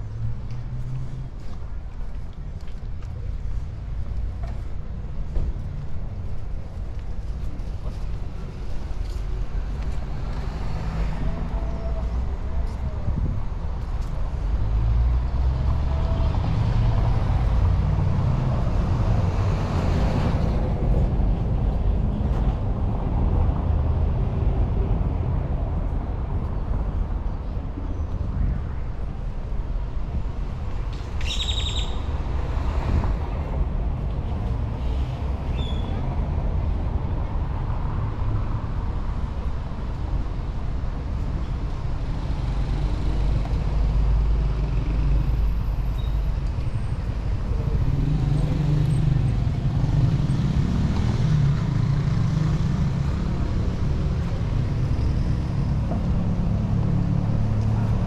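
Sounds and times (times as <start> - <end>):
vehicle engines passing: 0.0 - 58.0.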